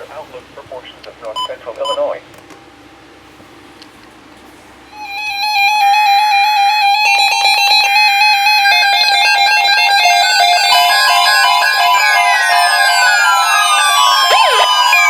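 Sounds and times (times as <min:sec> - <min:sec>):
electronic synth melody: 0:04.9 - 0:15.0.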